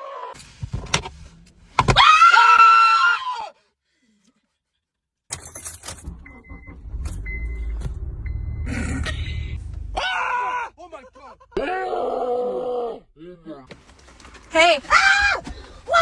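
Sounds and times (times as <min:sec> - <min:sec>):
car engine rumble: 0:00.4 - 0:02.0, 0:06.0 - 0:11.6, 0:13.7 - 0:16.0
loud high-pitched scream: 0:02.0 - 0:03.5.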